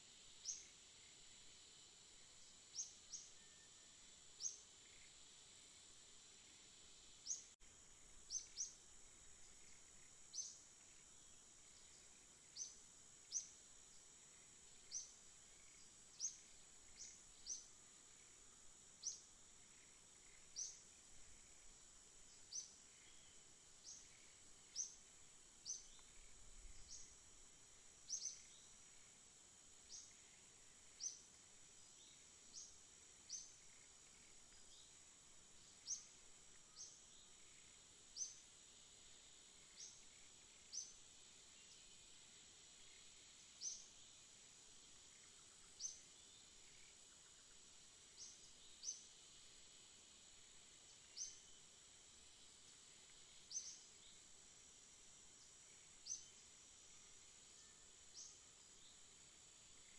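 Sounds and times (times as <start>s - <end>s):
faint high-pitched whine: 0.0s - 59.9s
small bird chirping: 0.4s - 0.8s, 2.7s - 5.1s, 7.2s - 7.6s, 8.2s - 11.0s, 11.7s - 14.0s, 14.7s - 18.4s, 19.0s - 27.2s, 28.0s - 29.1s, 29.8s - 31.4s, 32.0s - 35.0s, 35.6s - 38.5s, 43.5s - 43.9s, 45.1s - 47.1s, 48.1s - 49.2s, 51.0s - 51.6s, 53.4s - 54.2s, 55.4s - 56.4s.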